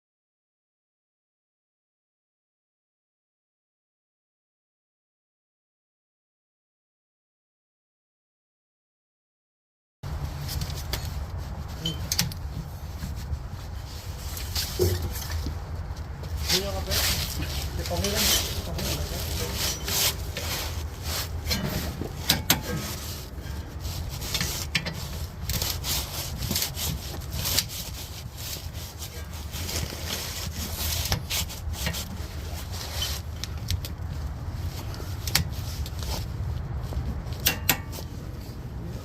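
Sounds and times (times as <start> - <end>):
rubbing and scraping: 10.0 - 39.0
sharp metallic clicks and knocks: 21.5 - 22.8, 37.3 - 38.1.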